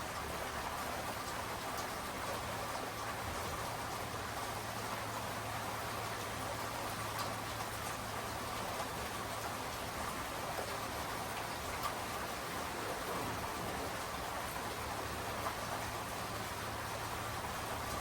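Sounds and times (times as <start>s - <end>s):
steady rain patter: 0.0s - 18.0s
raindrop ticks: 1.2s - 2.4s, 7.0s - 8.0s, 11.4s - 12.0s.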